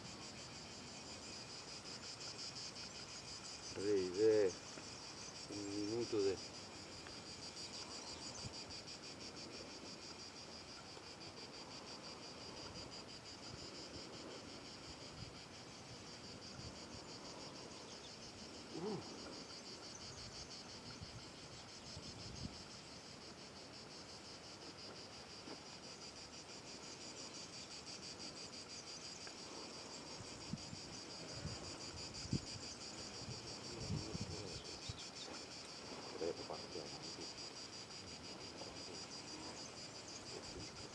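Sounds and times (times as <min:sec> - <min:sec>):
insects chirping: 0:00.0 - 0:40.9
wind buffeting microphone: 0:33.2 - 0:34.7.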